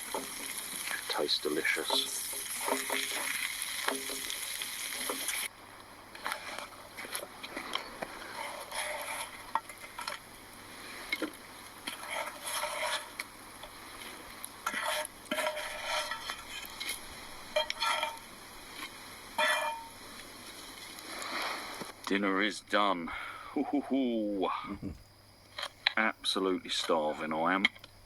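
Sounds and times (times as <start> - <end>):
beans sizzling in a pan: 0.0 - 5.5, 6.1 - 22.1
utensil scraping a pan: 0.0 - 5.5, 6.1 - 22.0.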